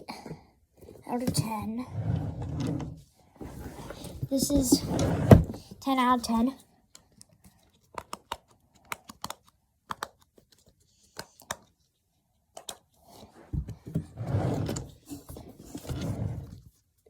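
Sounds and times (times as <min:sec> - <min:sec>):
rubbing and handling noise: 0:01.3 - 0:09.3.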